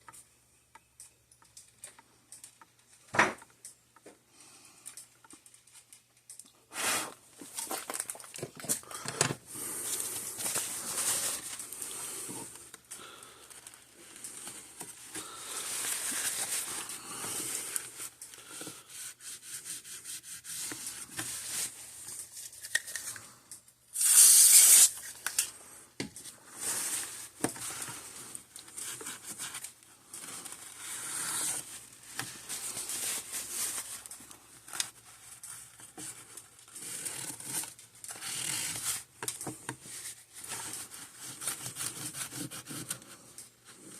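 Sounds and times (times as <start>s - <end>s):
hands scratching and rustling: 9.6s - 12.8s, 13.5s - 18.2s.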